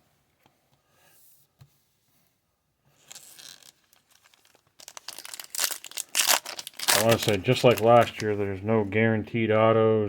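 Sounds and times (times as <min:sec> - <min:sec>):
plastic sleeve crinkling: 0:03.0 - 0:09.0.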